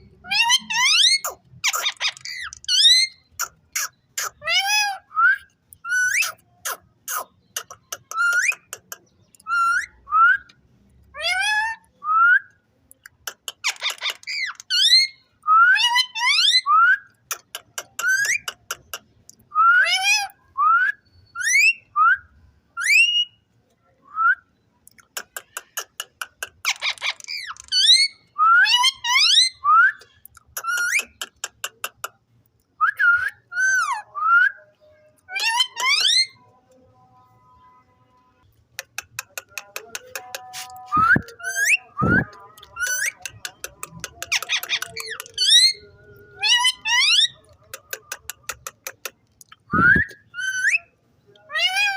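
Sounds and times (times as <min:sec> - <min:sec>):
parrot buzzy chatter: 0:00.2 - 0:05.0, 0:05.9 - 0:09.1, 0:13.0 - 0:15.0, 0:17.2 - 0:19.1, 0:24.9 - 0:28.1, 0:30.2 - 0:32.2, 0:35.3 - 0:36.4, 0:38.6 - 0:49.6.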